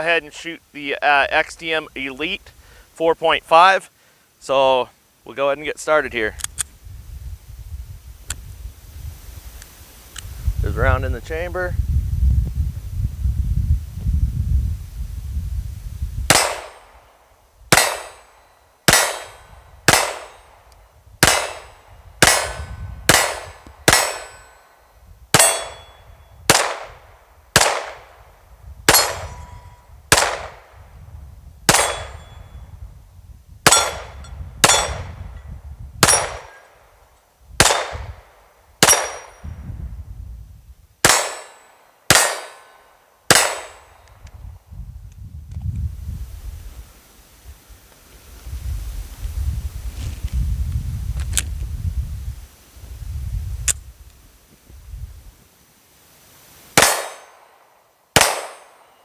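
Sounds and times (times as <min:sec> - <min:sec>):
pistol shots: 0:16.3 - 0:16.9, 0:17.7 - 0:18.3, 0:18.9 - 0:20.4, 0:21.2 - 0:24.6, 0:25.4 - 0:25.9, 0:26.5 - 0:27.0, 0:27.6 - 0:28.1, 0:28.9 - 0:29.4, 0:30.1 - 0:30.7, 0:31.7 - 0:32.2, 0:33.7 - 0:35.1, 0:36.0 - 0:36.6, 0:37.6 - 0:38.1, 0:38.8 - 0:39.4, 0:41.0 - 0:44.0, 0:56.8 - 0:57.6, 0:58.2 - 0:59.0.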